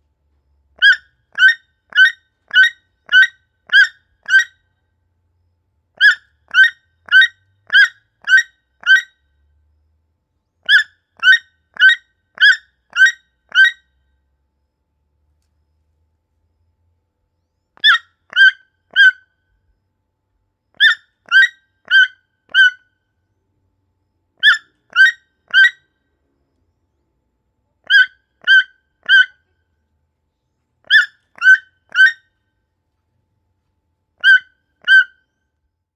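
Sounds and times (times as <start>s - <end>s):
toucan calling: 0.8s - 4.6s, 6.0s - 9.2s, 10.6s - 13.8s, 17.8s - 19.3s, 20.8s - 22.9s, 24.4s - 25.8s, 27.8s - 29.5s, 30.8s - 32.2s, 34.2s - 35.2s.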